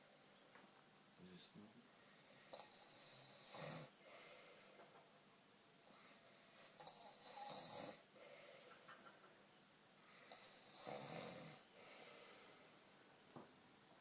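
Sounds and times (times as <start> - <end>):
man snoring faintly: 2.5 - 4.8, 6.8 - 8.9, 10.2 - 12.8.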